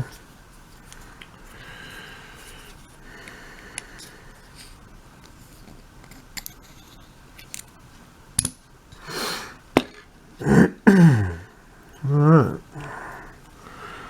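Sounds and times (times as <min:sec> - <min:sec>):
person sniffing: 0:09.0 - 0:09.6
short vocal sounds: 0:10.4 - 0:13.2.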